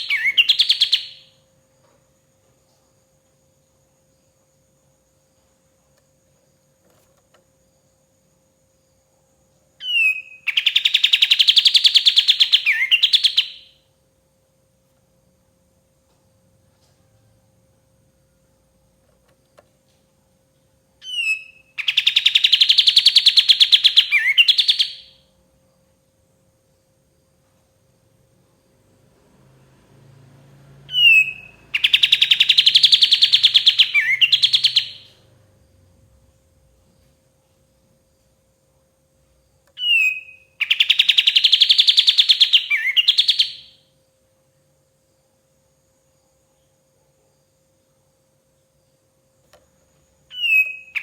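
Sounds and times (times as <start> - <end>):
bird singing chattering trill: 0.0 - 1.4, 9.8 - 13.8, 21.0 - 25.2, 30.9 - 35.3, 39.8 - 43.8, 50.3 - 51.0.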